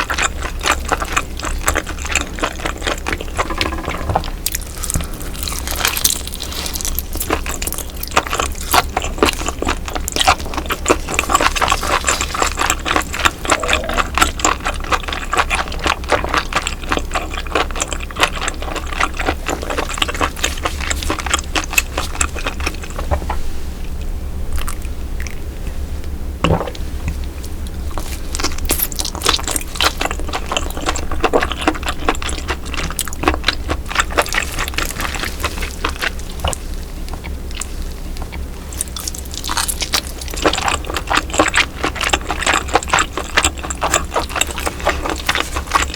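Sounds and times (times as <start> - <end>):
wet chewing: 0.0 - 25.7, 26.4 - 45.9.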